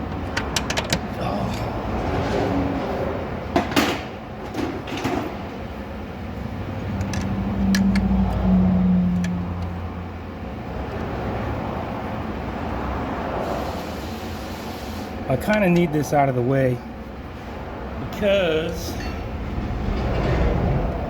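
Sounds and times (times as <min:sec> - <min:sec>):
hand tools clanking and clicking: 0:00.1 - 0:01.8, 0:07.0 - 0:08.1.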